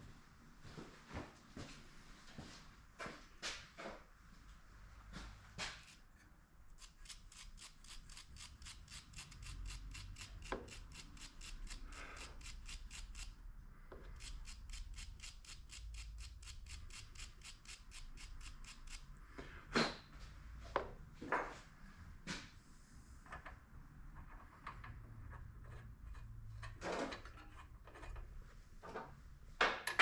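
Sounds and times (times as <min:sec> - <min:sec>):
wire brush scrubbing spark plug: 0:06.8 - 0:13.4, 0:14.1 - 0:19.0.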